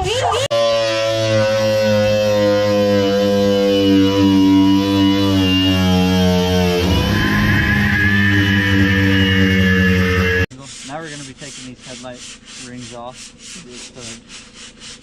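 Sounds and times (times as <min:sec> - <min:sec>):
held guitar chords: 0:00.9 - 0:10.5.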